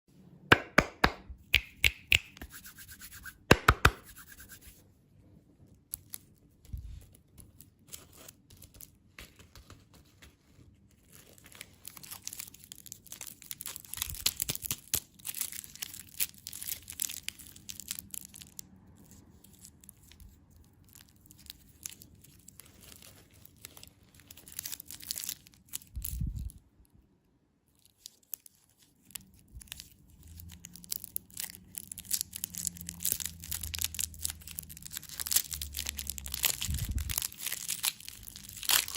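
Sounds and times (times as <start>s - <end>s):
rustling of packaging: 5.6s - 26.6s, 27.7s - 38.9s
plastic wrappers crinkling and tearing: 5.8s - 26.6s, 27.7s - 38.9s.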